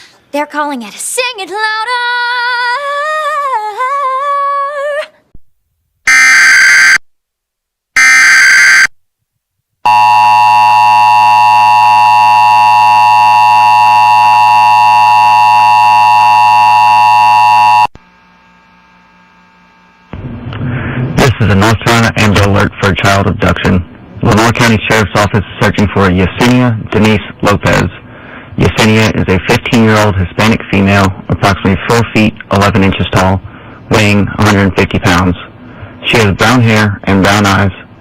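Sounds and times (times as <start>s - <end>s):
faint hum: 0.0s - 38.0s
data burst tones: 8.0s - 8.9s.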